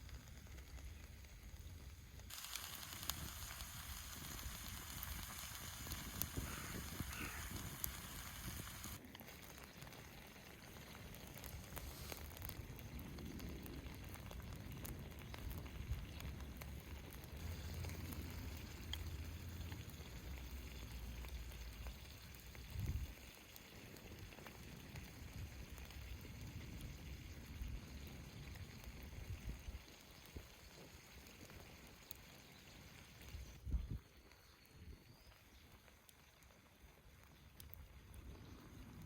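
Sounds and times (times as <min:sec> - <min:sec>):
wood fire crackling: 0:00.0 - 0:39.0
low steady rumble: 0:13.0 - 0:22.0.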